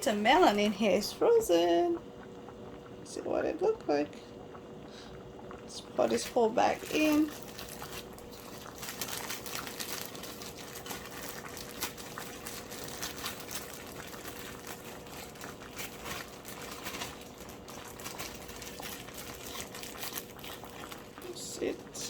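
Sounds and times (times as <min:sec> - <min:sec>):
soup simmering and bubbling: 0:01.5 - 0:22.0
plastic bag crinkling: 0:06.0 - 0:22.0
dense crackle of small ticks: 0:06.1 - 0:22.0.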